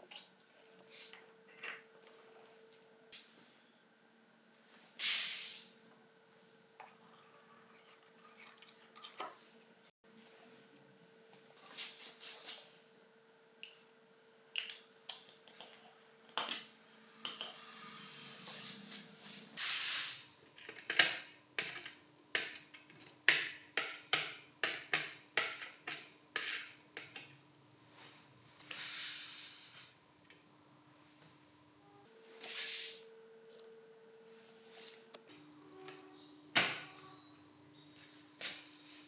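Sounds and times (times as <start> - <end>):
small parts clinking on surface: 7.8 - 9.4.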